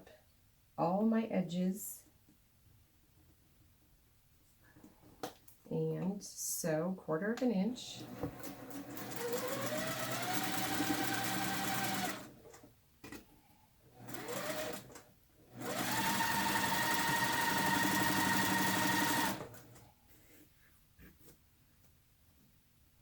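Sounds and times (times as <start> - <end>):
electric sewing machine whine: 8.0 - 12.7, 13.9 - 19.8.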